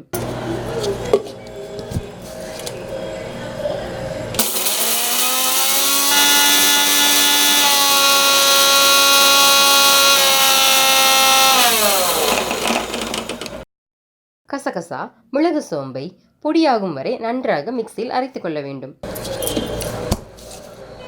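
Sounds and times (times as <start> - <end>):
mixer grinder grinding seeds: 0.1 - 13.6.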